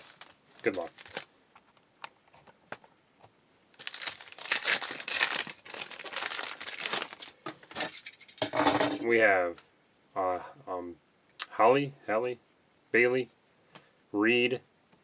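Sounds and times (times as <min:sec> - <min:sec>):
plastic wrapper tearing and crinkling: 0:00.0 - 0:02.1, 0:03.7 - 0:07.5.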